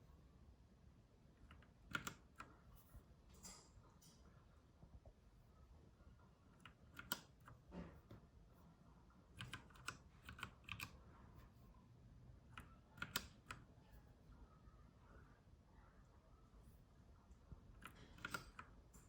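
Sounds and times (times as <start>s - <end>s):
mechanical keyboard key clicks: 1.5s - 2.4s, 6.6s - 7.3s, 9.4s - 11.0s, 12.6s - 13.6s, 17.8s - 18.7s.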